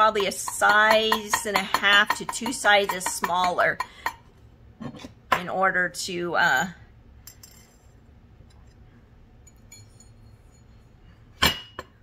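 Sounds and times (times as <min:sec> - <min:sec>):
faint small metal clinks: 0:09.4 - 0:10.8.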